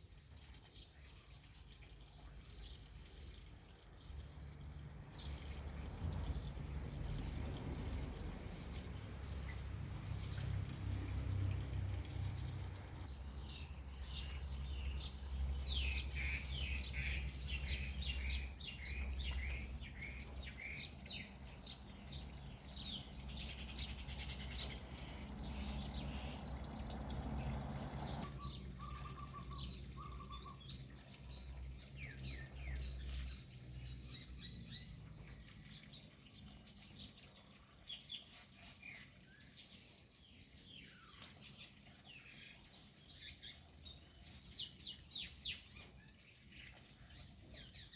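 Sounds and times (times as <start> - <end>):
small birds chirping: 0.4 - 47.9
low steady rumble: 4.4 - 29.8.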